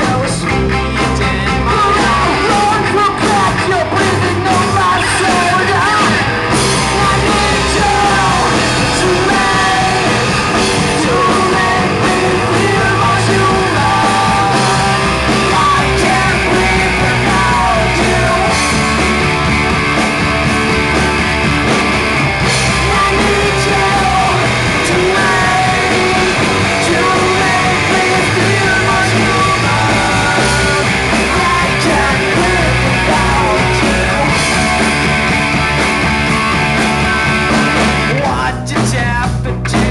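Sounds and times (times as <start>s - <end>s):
person singing: 0.0s - 19.2s, 22.4s - 34.9s, 36.9s - 39.9s
live rock band playing: 0.0s - 39.9s.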